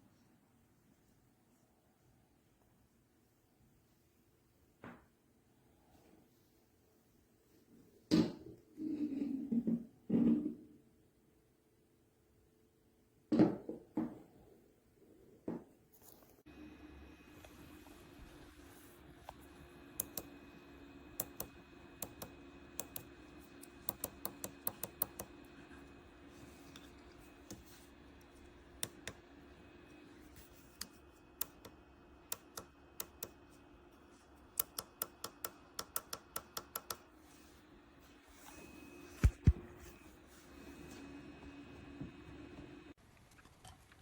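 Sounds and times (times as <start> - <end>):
faint steady hum: 14.5 - 43.4.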